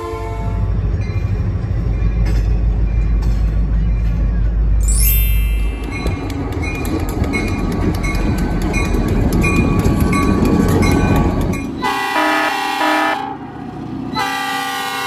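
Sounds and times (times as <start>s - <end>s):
locomotive horn: 0.0s - 0.7s, 11.8s - 13.5s, 14.1s - 15.0s
diesel locomotive rumbling: 0.0s - 15.0s
wheels clicking over rails: 5.6s - 11.9s.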